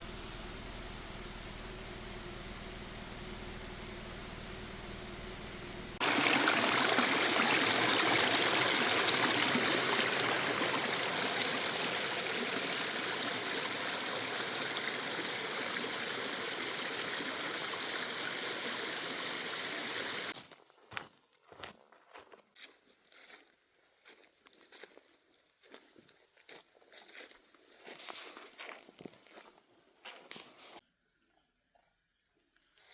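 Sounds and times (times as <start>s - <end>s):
stream water rushing over rocks: 6.0s - 20.3s.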